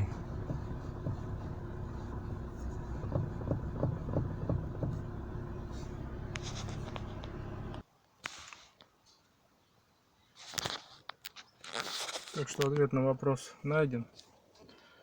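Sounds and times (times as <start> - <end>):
car engine idling: 0.0 - 7.8
sharp knocks from steering joint: 0.0 - 7.8.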